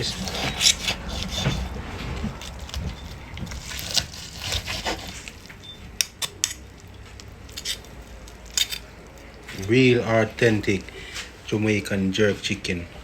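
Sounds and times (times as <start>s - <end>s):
metal cooking utensils clinking: 5.6s - 9.8s.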